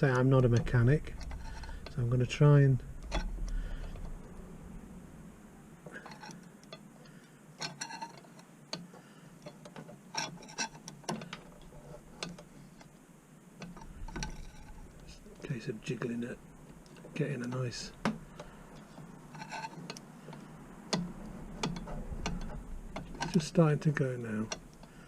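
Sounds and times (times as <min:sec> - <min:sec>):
screwdriver clicking and scraping metal: 0:07.6 - 0:08.8, 0:09.4 - 0:12.9, 0:13.6 - 0:15.5, 0:18.3 - 0:23.5.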